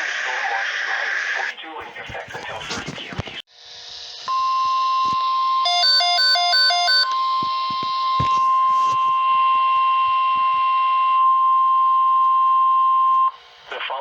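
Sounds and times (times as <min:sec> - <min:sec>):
radio hiss: 0:00.0 - 0:03.5, 0:13.3 - 0:14.0
steady alarm tone: 0:04.3 - 0:13.4
quick alternating beeps: 0:05.7 - 0:07.3.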